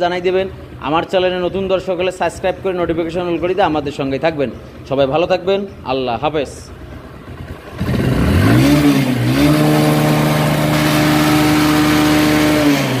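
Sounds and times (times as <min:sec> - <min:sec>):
motorcycle engine revving: 0:06.7 - 0:13.0.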